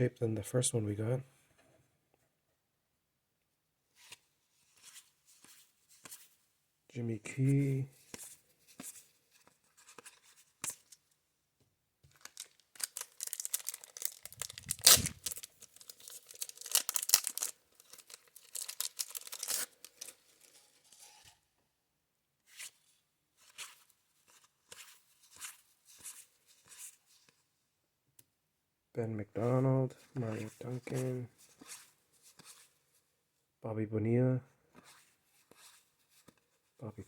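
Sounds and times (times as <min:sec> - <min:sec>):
trading cards being handled: 0:07.4 - 0:11.0, 0:12.1 - 0:21.3, 0:29.4 - 0:32.7
wax paper wrapper crinkling and ripping: 0:12.1 - 0:21.2.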